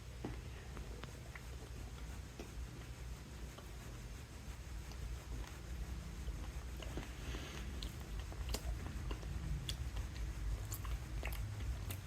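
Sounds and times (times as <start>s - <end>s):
steady low hum: 0.0s - 12.0s
faint chewing: 0.2s - 2.9s, 6.2s - 12.0s.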